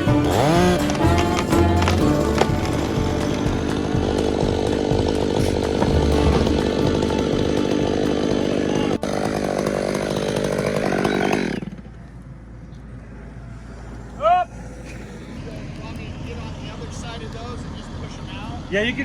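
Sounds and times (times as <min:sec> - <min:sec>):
chainsaw cutting timber: 0:00.0 - 0:12.0.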